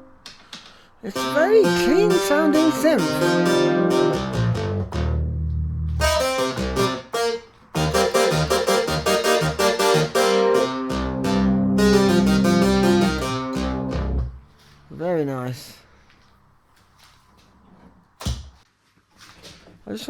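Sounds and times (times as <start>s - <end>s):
held synth bass notes: 1.2s - 14.4s
synthesizer playing struck notes: 1.2s - 14.4s.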